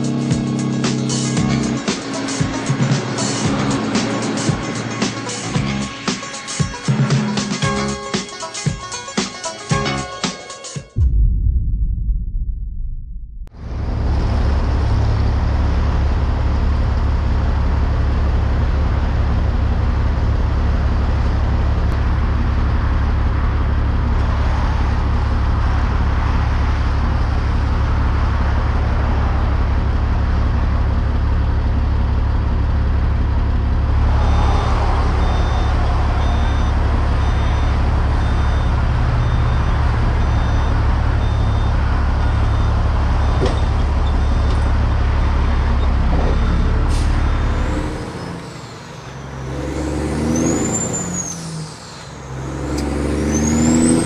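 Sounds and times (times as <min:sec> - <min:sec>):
diesel engine rumbling: 0:00.0 - 0:08.2, 0:13.3 - 0:54.0
backup alarm beeping: 0:34.2 - 0:44.5.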